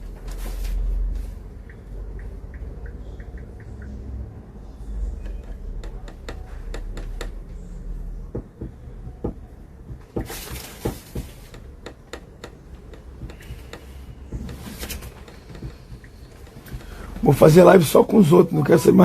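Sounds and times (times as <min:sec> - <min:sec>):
light clicks and taps: 0:01.6 - 0:04.0.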